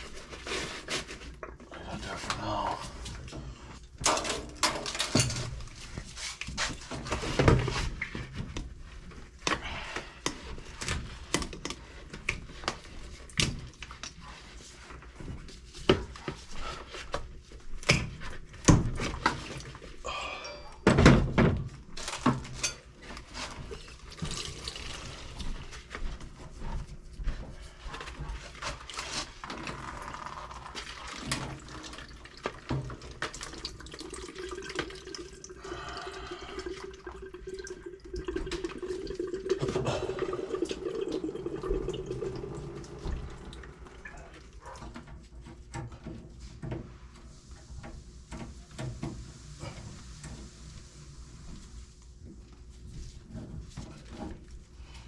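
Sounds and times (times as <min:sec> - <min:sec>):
plumbing parts and tools clattering: 0:03.1 - 0:08.6.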